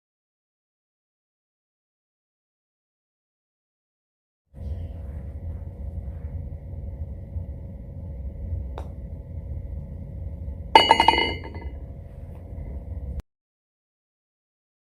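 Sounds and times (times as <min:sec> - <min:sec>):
low background rumble: 0:04.6 - 0:13.2
golf ball clinking into cup: 0:10.8 - 0:11.6.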